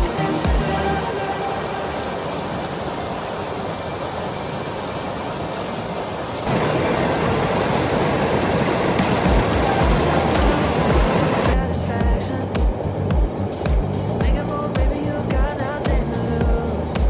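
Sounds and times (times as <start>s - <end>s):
rushing water: 0.0s - 17.0s.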